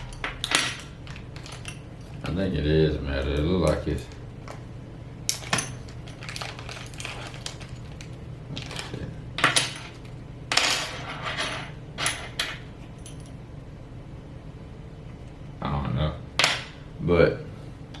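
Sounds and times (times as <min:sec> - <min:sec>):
small metal parts clinking: 0:00.0 - 0:02.2, 0:05.3 - 0:13.4.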